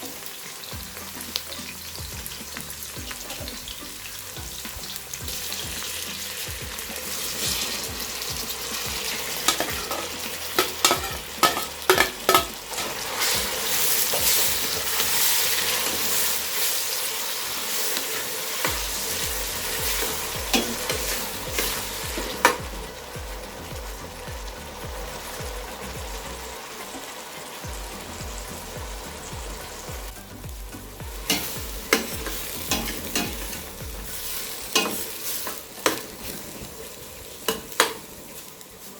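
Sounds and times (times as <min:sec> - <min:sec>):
food sizzling in hot oil: 0:00.0 - 0:38.9
utensil knocking against pot: 0:08.9 - 0:12.6.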